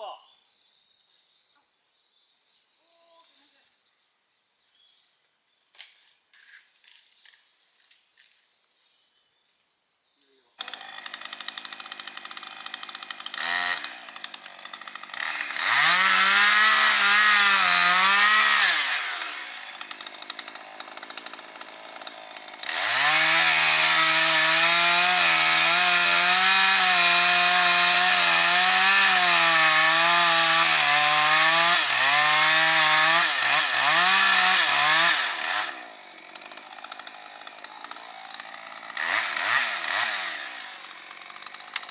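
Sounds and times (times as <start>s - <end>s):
chainsaw cutting wood: 10.6s - 41.9s.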